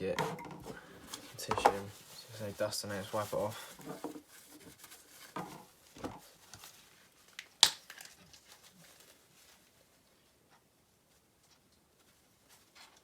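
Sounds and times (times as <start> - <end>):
tissue rubbing on graphics card: 0.8 - 7.2.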